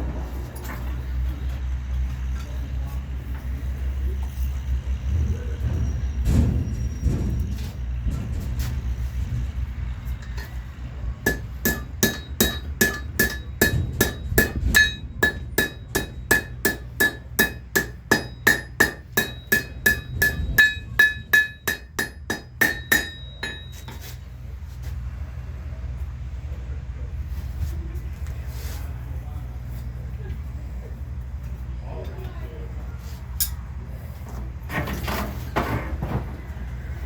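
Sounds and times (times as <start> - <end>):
low hum: 0.0 - 34.1
hammer ringing on anvil: 11.2 - 24.0.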